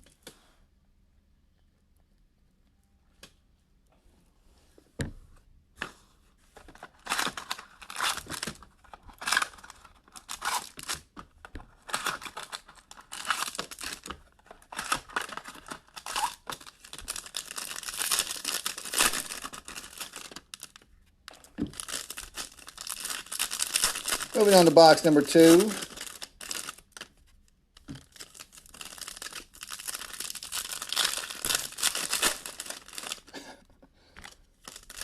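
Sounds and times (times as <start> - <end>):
plastic wrapping tearing and crinkling: 6.6 - 33.4, 34.2 - 35.0.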